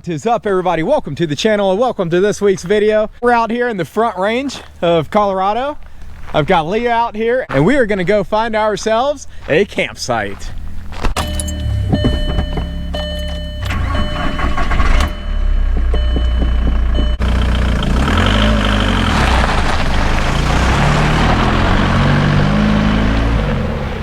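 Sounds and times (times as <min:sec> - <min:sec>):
road noise: 0:03.8 - 0:24.0
car engine running: 0:10.5 - 0:24.0
steady tones: 0:10.6 - 0:19.0
knocks: 0:11.2 - 0:13.5, 0:15.1 - 0:17.2.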